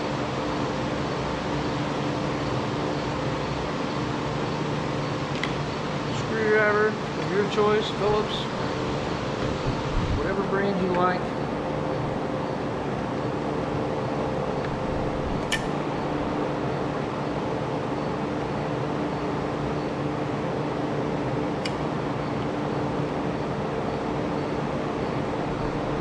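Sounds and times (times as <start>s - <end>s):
fan humming: 0.0s - 26.0s
screwdriver clicks: 15.4s - 15.7s.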